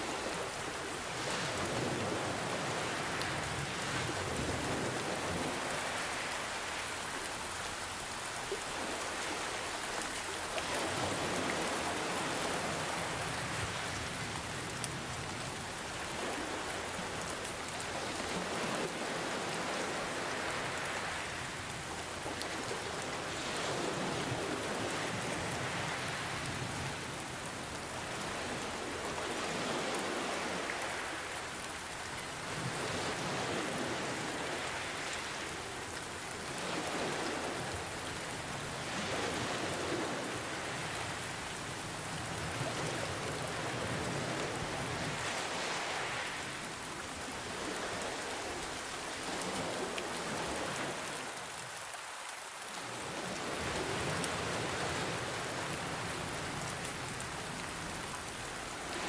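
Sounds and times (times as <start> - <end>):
ocean waves: 0.0 - 59.0
steady rain hiss: 0.0 - 59.0.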